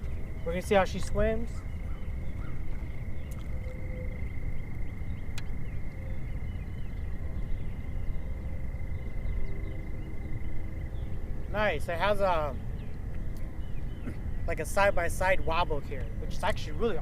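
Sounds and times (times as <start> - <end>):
high-pitched whine: 0.0 - 17.0
low wind rumble: 0.0 - 17.0
faint clicks: 3.3 - 3.6, 5.3 - 5.6.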